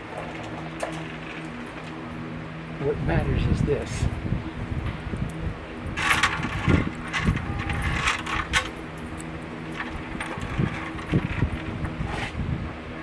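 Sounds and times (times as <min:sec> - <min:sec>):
steady low hum: 0:00.0 - 0:13.0
metal parts clinking on workbench: 0:06.0 - 0:08.8
short rattle: 0:06.0 - 0:12.2.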